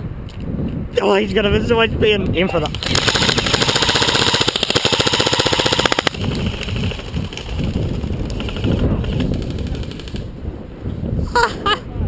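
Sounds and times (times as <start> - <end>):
airsoft gun firing: 2.8 - 10.3.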